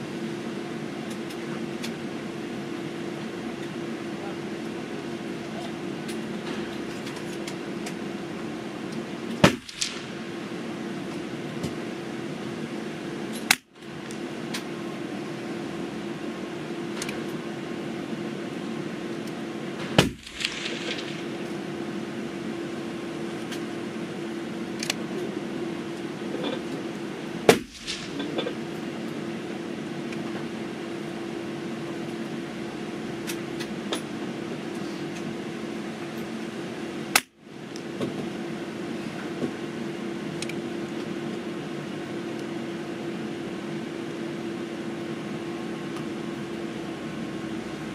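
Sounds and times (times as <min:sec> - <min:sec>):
steady low hum: 0:00.0 - 0:47.9
rifle shots: 0:09.4 - 0:10.7, 0:20.0 - 0:21.8, 0:27.5 - 0:28.5.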